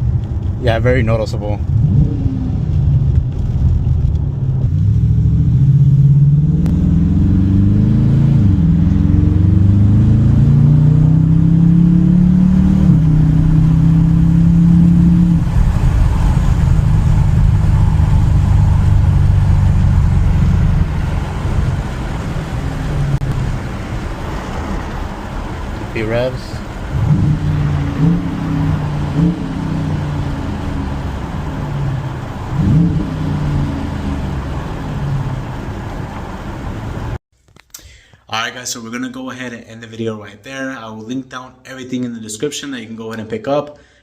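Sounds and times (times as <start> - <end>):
car engine revving: 0.0 - 37.2.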